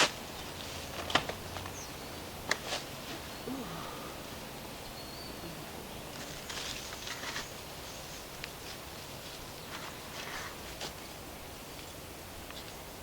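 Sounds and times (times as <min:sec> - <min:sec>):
rustling and scraping of soil: 0:00.0 - 0:03.5, 0:06.1 - 0:12.9
faint bird chirp: 0:04.8 - 0:06.0.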